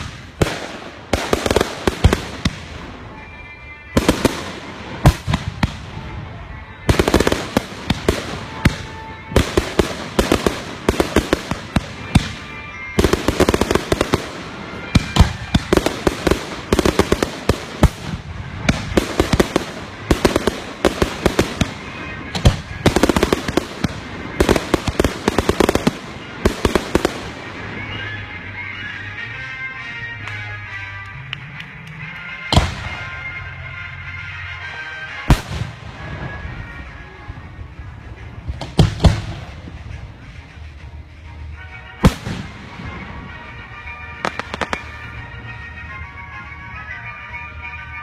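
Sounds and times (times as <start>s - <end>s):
fireworks cracking: 0.0s - 3.3s, 3.9s - 28.1s, 42.0s - 45.6s.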